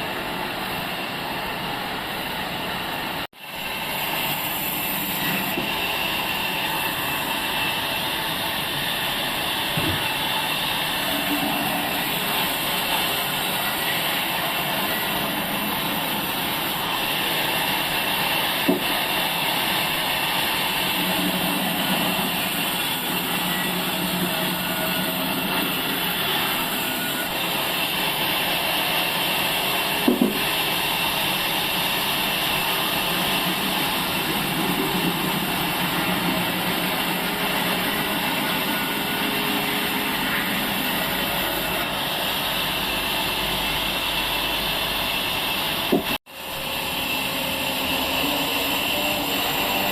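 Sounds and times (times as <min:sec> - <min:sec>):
sawmill machinery running: 0:00.0 - 0:49.9
sharp knocks: 0:30.0 - 0:30.4.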